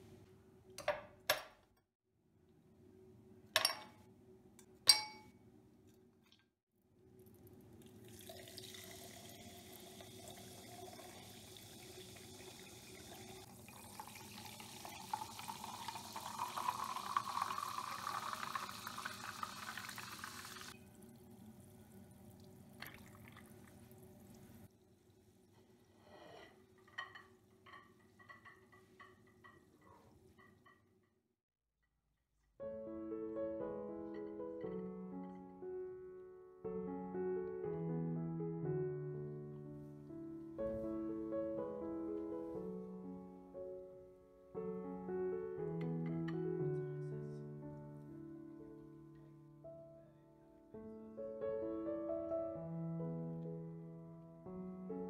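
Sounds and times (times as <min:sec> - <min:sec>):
glass clinking: 0:03.6 - 0:04.0, 0:04.9 - 0:05.4, 0:13.8 - 0:20.0, 0:26.2 - 0:30.9
liquid pouring into a glass: 0:07.2 - 0:21.6, 0:22.2 - 0:24.0.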